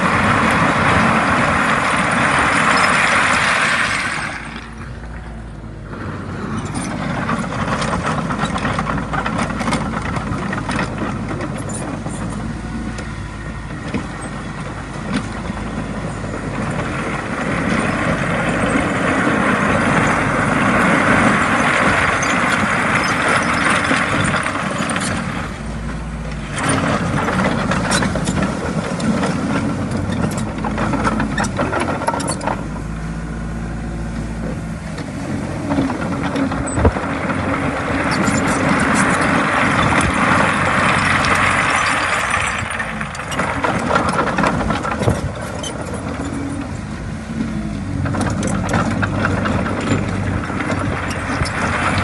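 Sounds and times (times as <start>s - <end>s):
bulldozer diesel engine under load: 0.0s - 52.0s
machine clanks and knocks: 6.5s - 12.4s, 26.4s - 32.8s, 35.7s - 46.8s, 47.4s - 52.0s.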